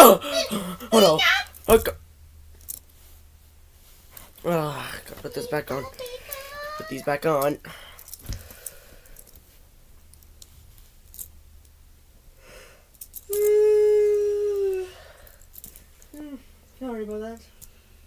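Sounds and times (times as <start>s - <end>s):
person yawning: 0.0s - 1.2s, 13.3s - 15.1s.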